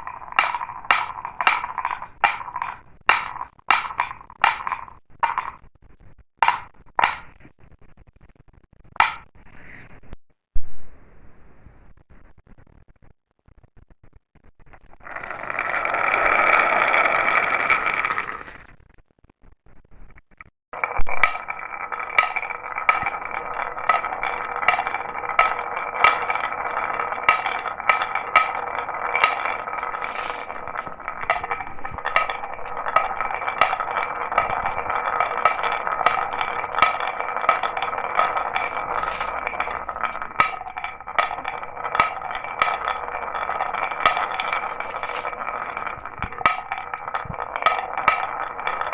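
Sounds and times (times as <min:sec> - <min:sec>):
marbles clicking and clinking: 0:00.0 - 0:05.6, 0:06.4 - 0:07.4, 0:14.7 - 0:19.1, 0:20.8 - 0:48.9
marbles rattling down track: 0:00.0 - 0:05.6, 0:06.4 - 0:07.4, 0:14.7 - 0:19.1, 0:20.8 - 0:48.9
marbles rolling hum: 0:00.0 - 0:08.1, 0:08.8 - 0:09.3, 0:14.4 - 0:19.8, 0:20.8 - 0:48.9.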